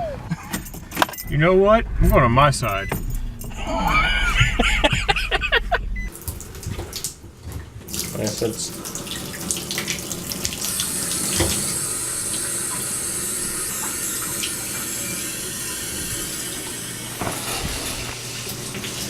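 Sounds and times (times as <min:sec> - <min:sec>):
water running from a tap: 0:06.1 - 0:19.0.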